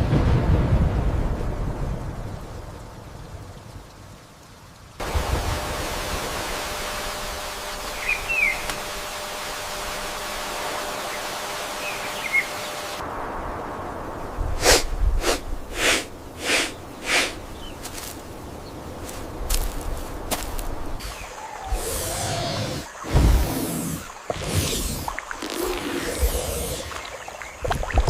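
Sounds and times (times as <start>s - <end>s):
steady rain-like hiss: 0.0s - 28.0s
bird chirps: 7.9s - 8.7s, 11.8s - 12.8s
quick whooshes: 14.6s - 17.4s.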